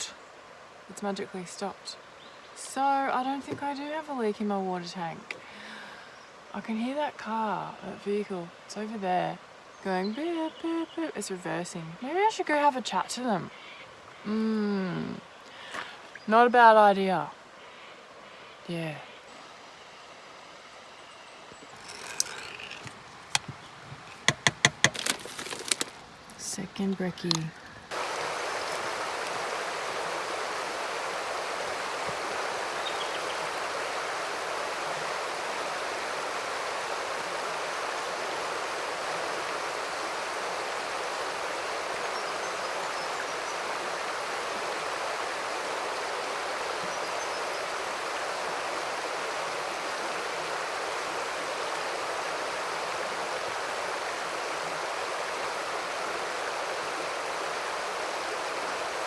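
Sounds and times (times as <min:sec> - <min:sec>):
river water rushing: 0:21.7 - 0:59.0.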